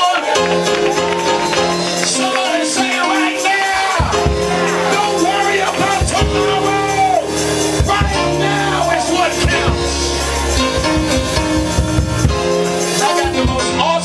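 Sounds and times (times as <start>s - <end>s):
church band music: 0.0s - 14.0s
held bass notes: 0.6s - 14.0s
drum hits: 3.8s - 14.0s.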